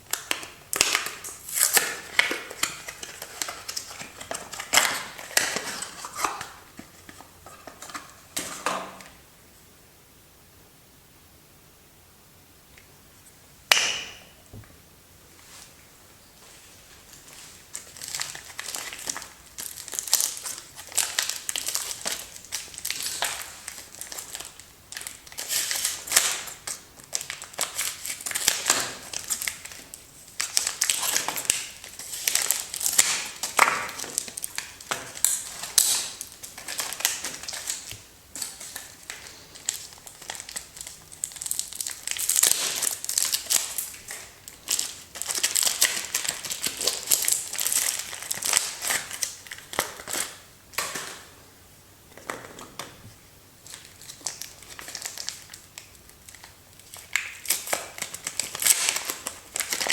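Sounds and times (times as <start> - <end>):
packaging crinkling and tearing: 0.1 - 9.1, 16.9 - 51.3, 53.6 - 59.9.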